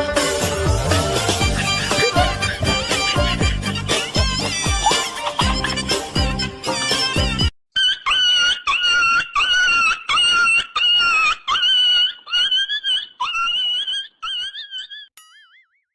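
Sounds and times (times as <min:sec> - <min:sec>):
high-pitched yelping call: 0:07.8 - 0:15.6.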